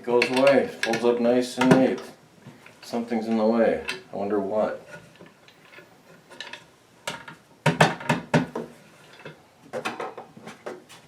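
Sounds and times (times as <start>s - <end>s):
knocks on wooden cabinet: 7.6s - 8.7s.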